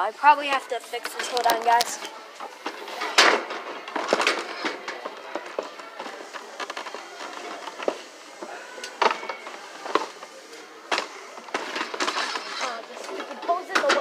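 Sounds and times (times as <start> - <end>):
plastic toy knocking and rattling: 13.1 - 14.0.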